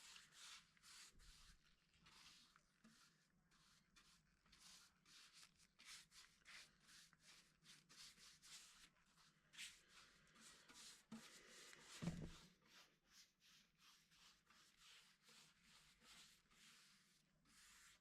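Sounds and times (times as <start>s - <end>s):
rubbing on wooden desk: 0.1s - 18.0s
low thump: 12.0s - 12.4s.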